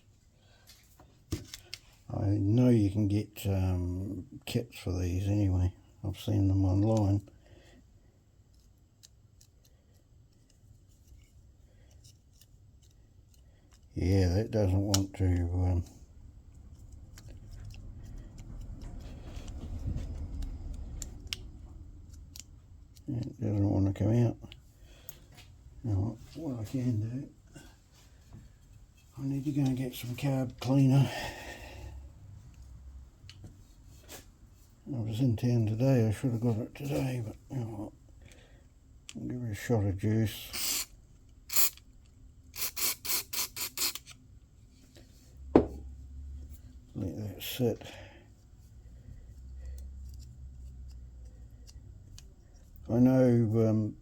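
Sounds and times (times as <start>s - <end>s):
aerosol spray can hissing: 40.5s - 40.9s, 41.5s - 41.8s, 42.6s - 44.0s.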